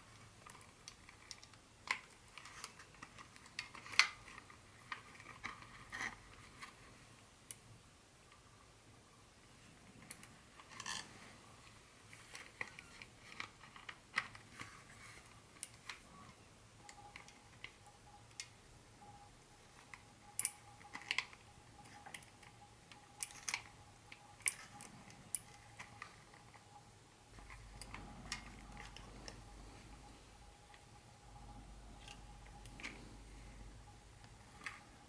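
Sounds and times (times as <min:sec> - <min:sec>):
faint high tone hum: 0:14.5 - 0:35.0.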